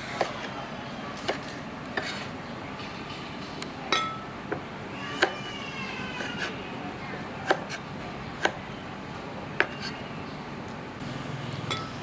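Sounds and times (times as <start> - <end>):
utensils and dishes clinking: 1.2 - 4.6, 11.4 - 12.0.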